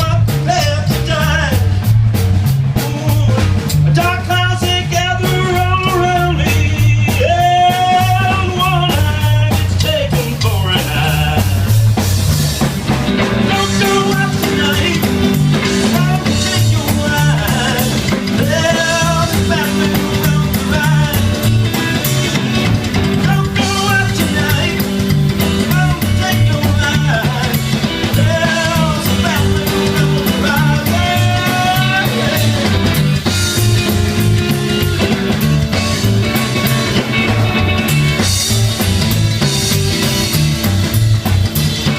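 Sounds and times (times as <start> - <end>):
bass guitar: 0.0 - 41.9
drum beat: 0.0 - 41.9
guitar: 0.0 - 41.9
person singing: 2.8 - 11.8, 13.3 - 34.7.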